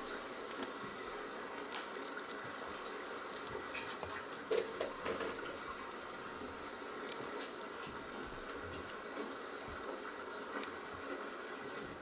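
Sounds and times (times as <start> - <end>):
small crackles and pops: 0.4 - 5.7, 7.0 - 11.1.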